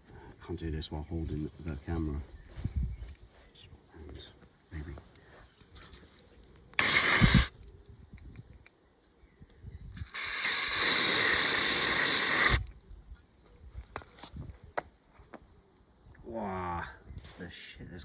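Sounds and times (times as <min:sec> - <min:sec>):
aerosol spray hissing: 0:06.8 - 0:07.5, 0:10.0 - 0:12.7.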